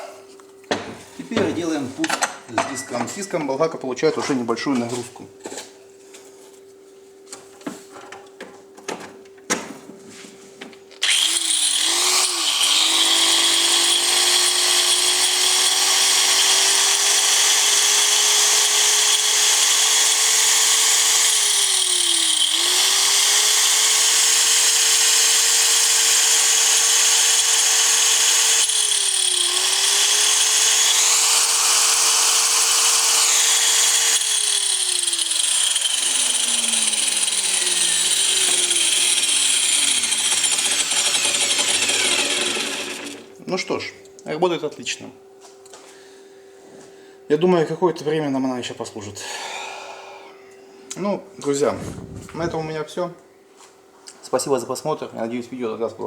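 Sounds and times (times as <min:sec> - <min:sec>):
angle grinder whining: 0:11.0 - 0:43.4, 0:51.7 - 0:52.8.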